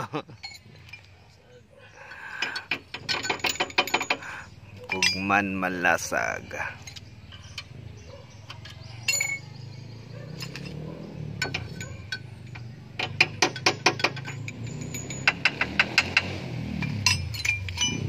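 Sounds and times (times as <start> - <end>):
metal tools clinking: 0.1 - 1.4, 2.0 - 18.0
sharp metallic clicks: 2.3 - 6.2, 6.8 - 7.8, 10.3 - 18.0.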